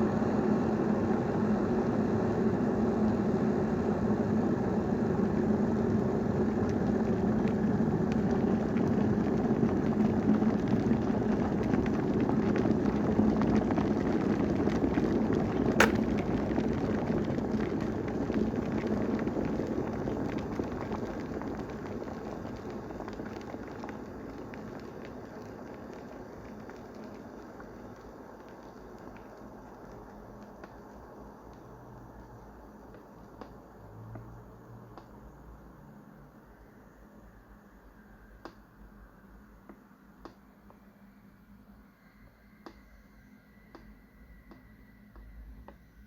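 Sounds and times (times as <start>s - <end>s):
electric kettle boiling: 0.0s - 46.0s
kettle switch click: 15.8s - 16.1s.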